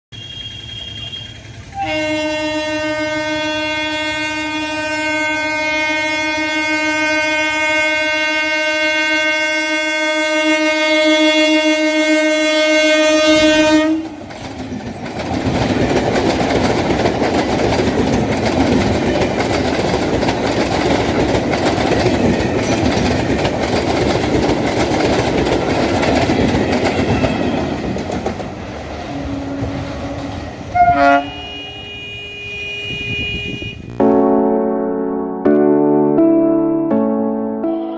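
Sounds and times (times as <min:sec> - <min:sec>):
train horn long blast: 0:00.1 - 0:14.2, 0:29.1 - 0:34.6
train wheels clattering on rails: 0:13.8 - 0:31.0.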